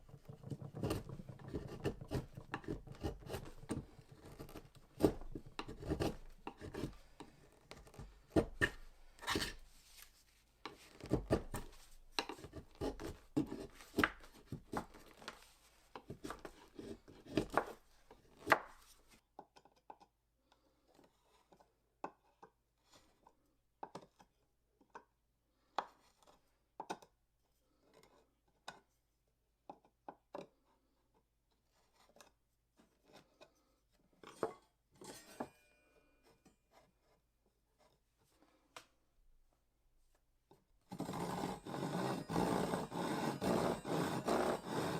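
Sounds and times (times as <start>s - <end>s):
blade shaving wood: 0.2s - 6.9s, 40.9s - 44.9s.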